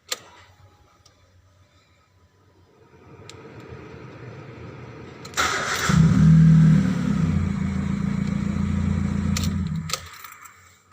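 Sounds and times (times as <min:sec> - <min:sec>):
car engine with exhaust drone: 0:02.7 - 0:10.1.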